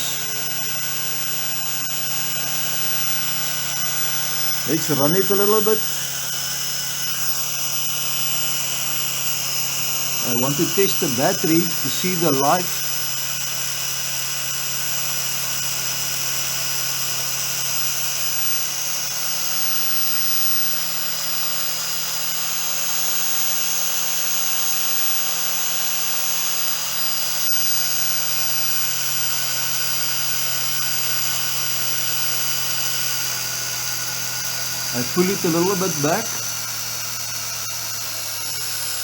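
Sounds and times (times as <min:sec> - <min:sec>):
drone propellers whining: 0:00.0 - 0:07.6, 0:35.0 - 0:36.6.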